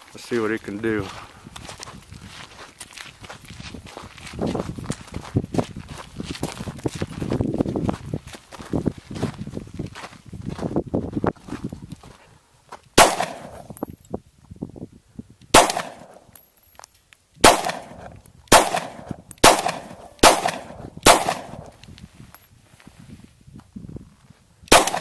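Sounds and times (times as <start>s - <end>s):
pistol shots with echo: 13.0s - 13.8s, 15.5s - 16.3s, 17.4s - 21.8s, 24.7s - 25.0s.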